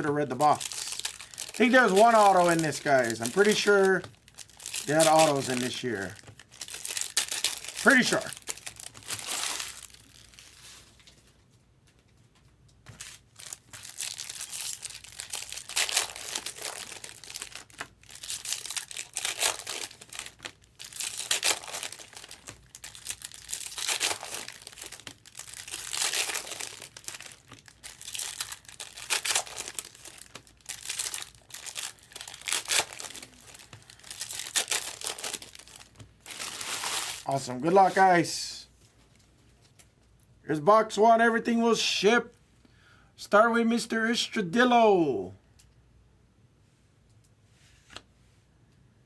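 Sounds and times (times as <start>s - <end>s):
plastic wrapping crinkling and tearing: 0.0s - 11.5s, 12.7s - 38.3s.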